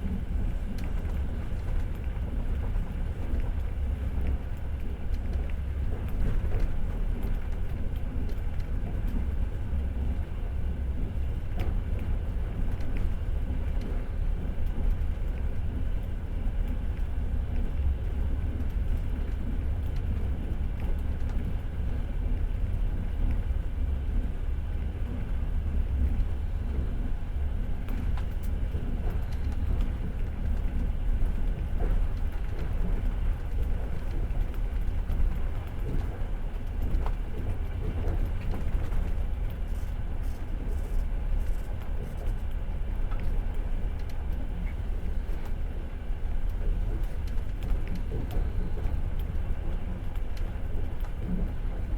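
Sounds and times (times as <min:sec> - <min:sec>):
train rumbling on rails: 0:00.0 - 0:51.9.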